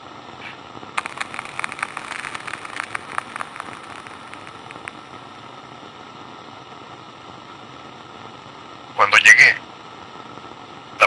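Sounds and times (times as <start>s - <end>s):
radio static hiss: 1.0s - 5.5s
irregular radio crackling: 1.0s - 5.7s.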